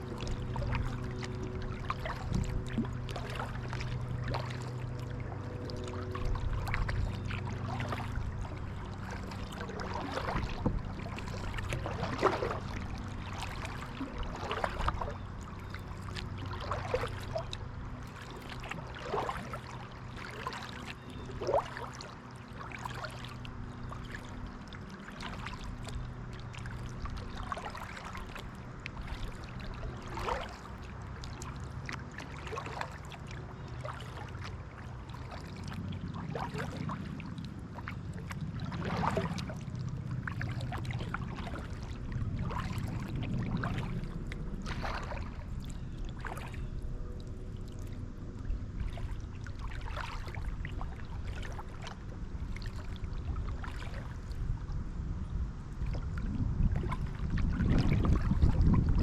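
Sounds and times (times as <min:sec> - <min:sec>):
paddle dipping into water: 0:00.0 - 0:54.7, 0:55.7 - 0:59.0
water dripping off paddle: 0:00.1 - 0:46.5.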